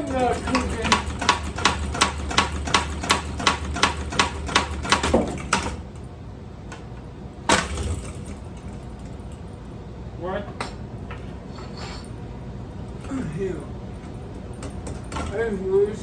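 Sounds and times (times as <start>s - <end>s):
rapid mechanical clicking: 0.0s - 6.1s.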